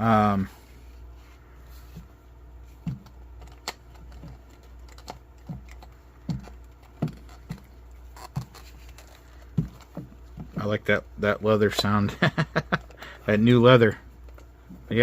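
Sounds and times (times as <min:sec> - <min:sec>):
leather belt creaking: 0:02.8 - 0:10.6.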